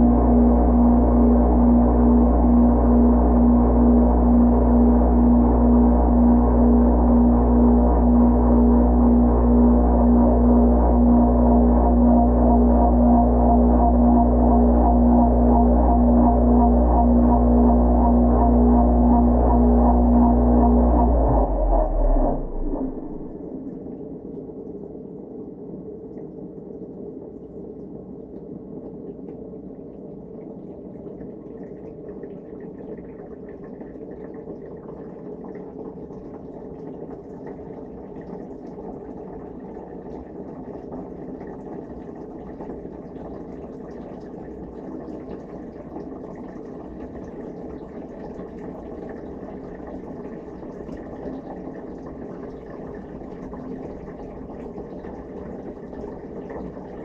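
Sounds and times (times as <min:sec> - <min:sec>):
dishwasher churning water: 0:00.0 - 0:23.4, 0:38.4 - 0:57.0.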